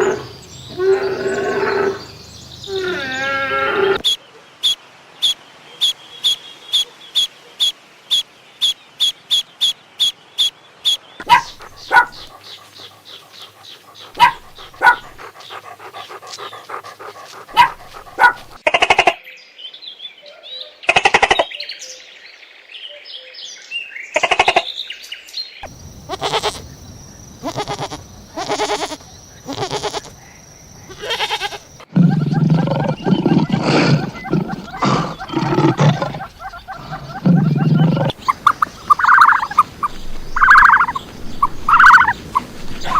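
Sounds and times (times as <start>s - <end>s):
animal calls: 0.0s - 19.2s, 25.6s - 42.9s
turkey gobbles: 10.9s - 19.1s, 30.9s - 42.9s.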